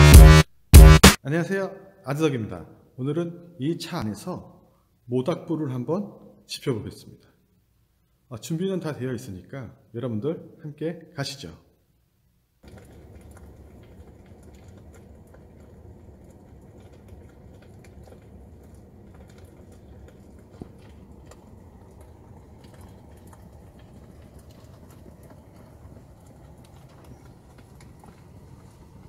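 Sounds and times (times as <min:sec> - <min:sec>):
crackling campfire sound effect: 0:12.6 - 0:29.0.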